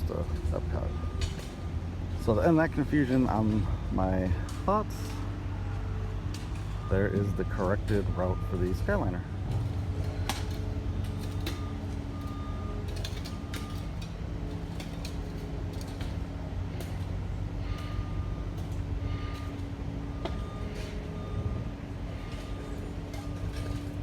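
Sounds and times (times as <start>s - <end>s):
heavy vehicle engine running: 0.0s - 24.0s
reversing alarm beeping: 0.2s - 24.0s
metallic clicks and clanks: 9.5s - 16.2s.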